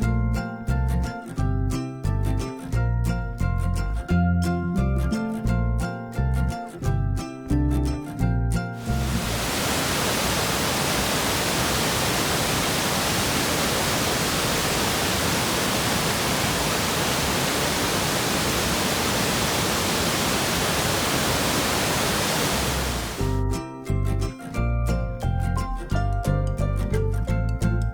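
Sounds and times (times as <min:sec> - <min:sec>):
waterfall roaring: 0:08.8 - 0:23.3.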